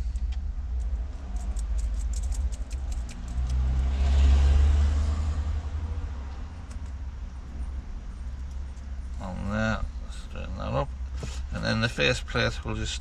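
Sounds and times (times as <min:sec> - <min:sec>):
passing motor vehicle rumble: 0:00.0 - 0:10.3.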